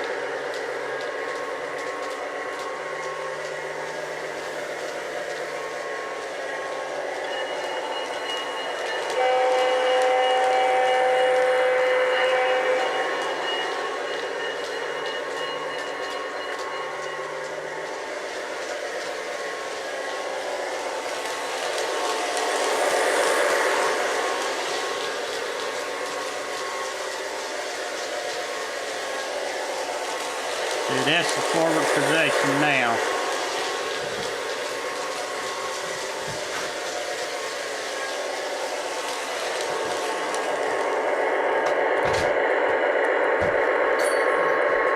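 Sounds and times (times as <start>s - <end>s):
model locomotive running on track: 0.0s - 44.9s
model train horn chord: 9.2s - 13.0s.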